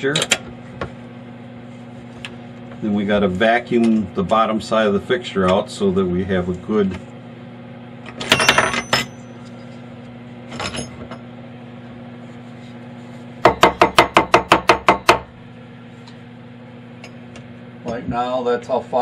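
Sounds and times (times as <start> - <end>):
metallic clinks: 8.3 - 9.4.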